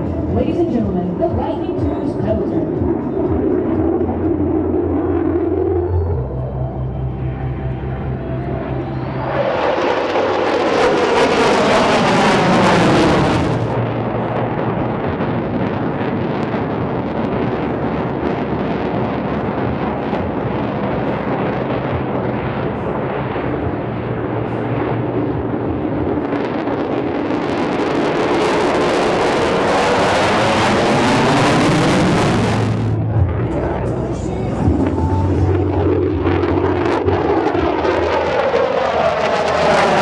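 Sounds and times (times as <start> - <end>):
fighter jet passing by: 7.8 - 33.8, 34.6 - 40.0.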